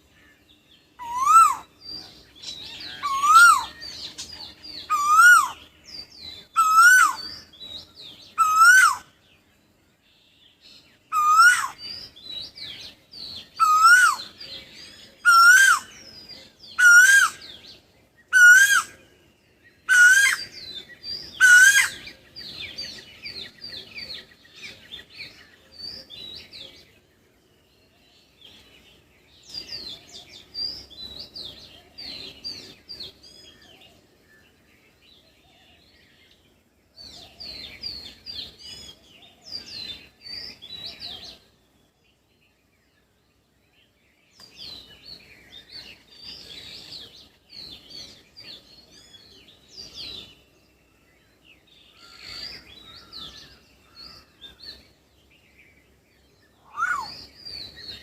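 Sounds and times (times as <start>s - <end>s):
faint high bird chirping: 0.0s - 58.0s
bird rising and falling call: 1.0s - 1.7s, 3.0s - 3.8s, 4.9s - 5.6s, 6.6s - 7.2s, 8.4s - 9.0s, 11.1s - 11.8s, 13.6s - 14.3s, 15.2s - 15.9s, 16.8s - 17.4s, 18.3s - 18.9s, 19.9s - 20.5s, 56.6s - 57.3s.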